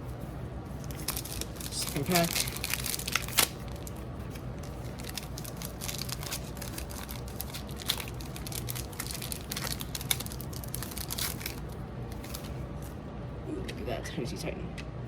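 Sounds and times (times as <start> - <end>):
wrapper crinkling and tearing: 0.8 - 12.5.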